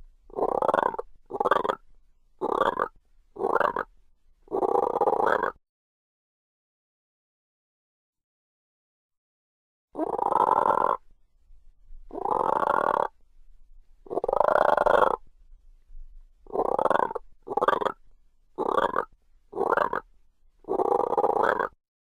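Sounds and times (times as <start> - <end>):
frog croaking: 0.3 - 1.8, 2.4 - 3.9, 4.5 - 5.6, 10.0 - 11.0, 12.1 - 13.1, 14.1 - 15.2, 16.5 - 18.0, 18.6 - 20.1, 20.7 - 21.8.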